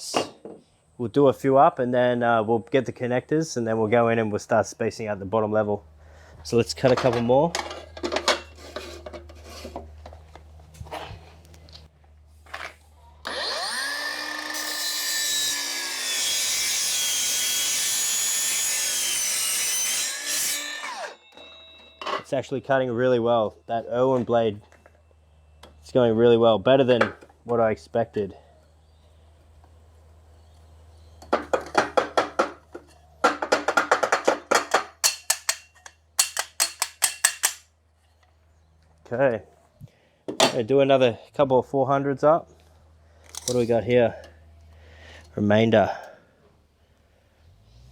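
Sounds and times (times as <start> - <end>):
chop saw cutting metal tubing: 13.2 - 22.0, 35.0 - 37.6.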